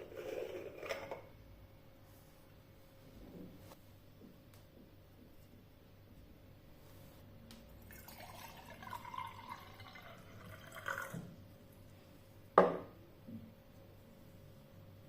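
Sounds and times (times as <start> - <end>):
liquid pouring into a glass: 7.8 - 11.3.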